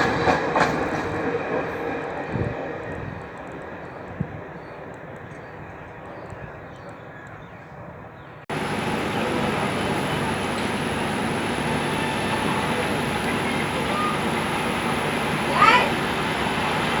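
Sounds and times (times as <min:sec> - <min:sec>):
train rumbling along track: 0:00.0 - 0:05.1, 0:08.5 - 0:17.0
faint outdoor ambience: 0:03.9 - 0:17.0.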